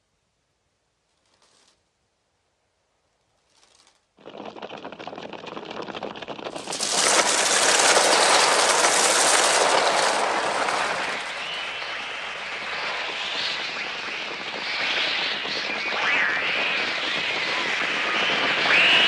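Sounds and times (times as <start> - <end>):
dense rush of noise: 4.2 - 19.0.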